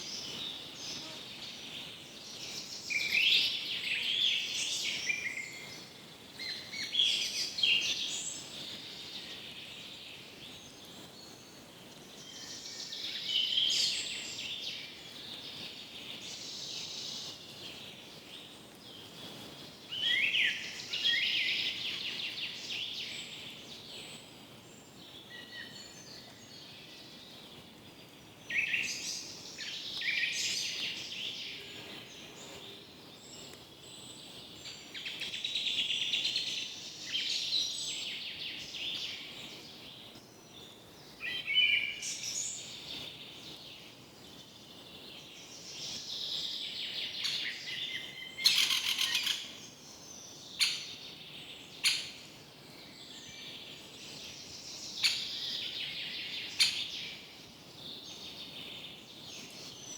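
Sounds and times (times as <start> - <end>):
faint background hiss: 0.0 - 59.9
birds chirping and trilling: 28.5 - 59.9.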